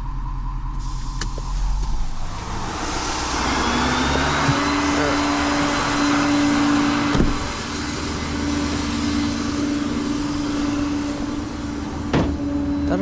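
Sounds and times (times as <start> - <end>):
hydraulic whine: 0.0 - 13.0
truck engine hum: 0.0 - 13.0.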